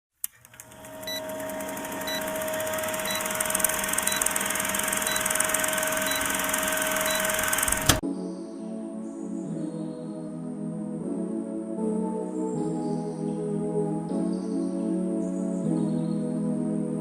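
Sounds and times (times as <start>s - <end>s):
whirring machine: 0.2s - 8.0s
short high beeps: 1.0s - 7.8s.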